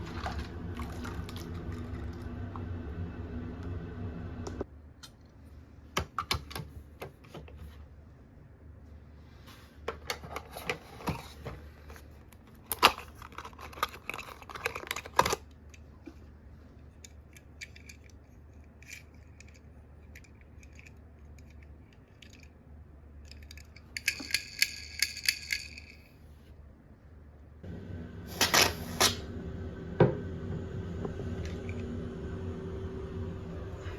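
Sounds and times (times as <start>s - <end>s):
toy cars and plastic cases clicking: 12.5s - 15.8s.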